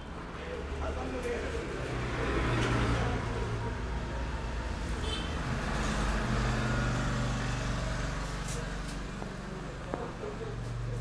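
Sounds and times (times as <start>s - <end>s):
street traffic noise: 0.0s - 11.0s.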